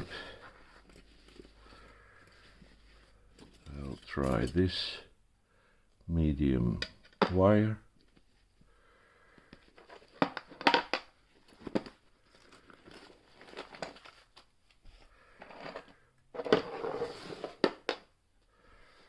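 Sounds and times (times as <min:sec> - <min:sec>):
tools rustling and crinkling: 0:00.0 - 0:05.0, 0:09.5 - 0:18.0.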